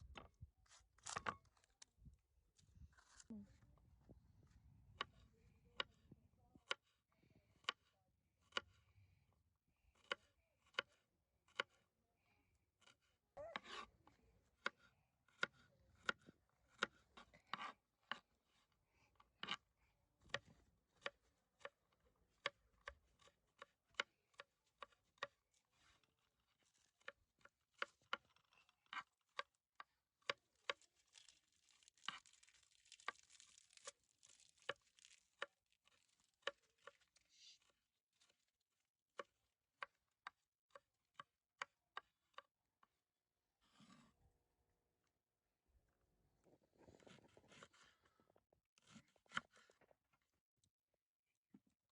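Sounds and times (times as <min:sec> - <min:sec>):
knife chopping on cutting board: 0:14.6 - 0:18.2.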